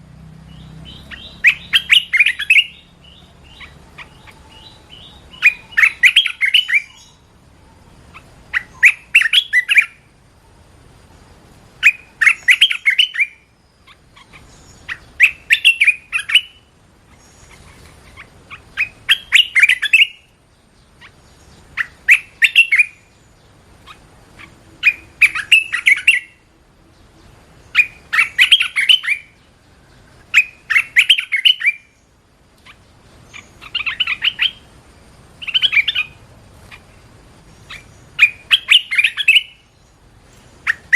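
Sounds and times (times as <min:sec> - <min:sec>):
bird singing chattering phrases: 0:00.4 - 0:10.8, 0:11.7 - 0:40.9.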